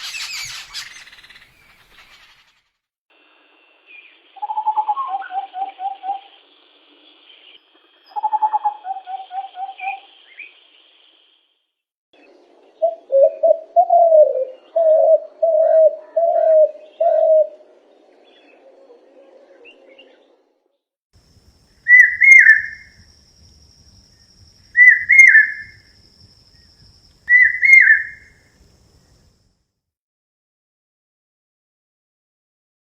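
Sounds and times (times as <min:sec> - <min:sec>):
bird calls: 0:00.0 - 0:02.6, 0:03.9 - 0:06.3, 0:08.0 - 0:10.6, 0:21.9 - 0:22.9, 0:24.7 - 0:25.9, 0:26.5 - 0:28.4.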